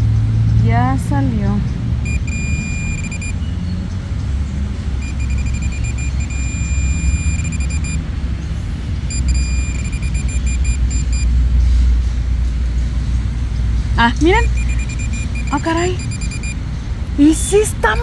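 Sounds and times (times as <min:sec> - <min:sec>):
metal detector beeping: 0:02.0 - 0:03.4, 0:05.0 - 0:08.0, 0:09.1 - 0:11.4, 0:14.2 - 0:16.6.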